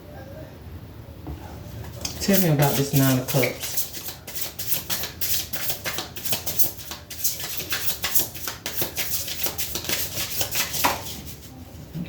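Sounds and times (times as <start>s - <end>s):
cards being shuffled: 2.0s - 11.5s.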